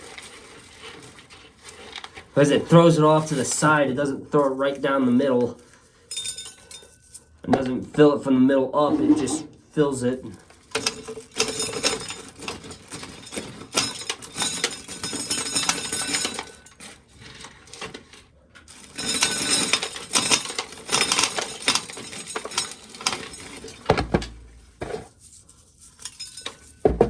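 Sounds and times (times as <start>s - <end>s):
corn kernels rattling into plastic pail: 10.2s - 18.1s, 18.7s - 25.2s.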